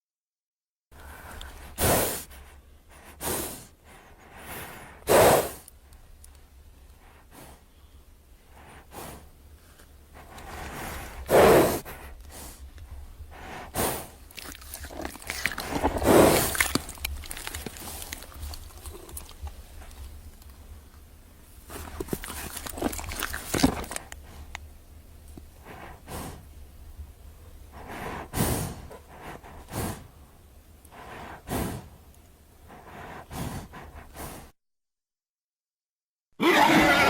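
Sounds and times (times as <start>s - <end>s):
rough creature growl bursts: 36.4s - 37.0s.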